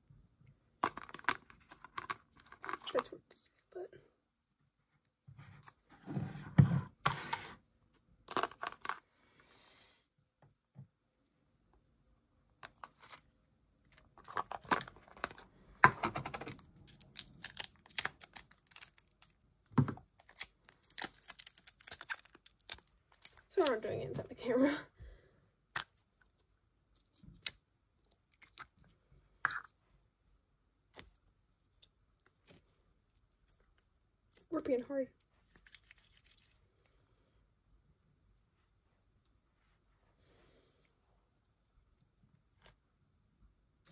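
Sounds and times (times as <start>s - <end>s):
knocks of small containers: 0.8s - 2.8s, 14.2s - 16.6s.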